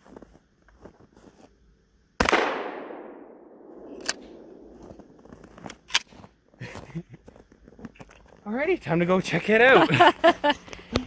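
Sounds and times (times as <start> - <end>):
shotgun blast echoing: 2.2 - 4.8.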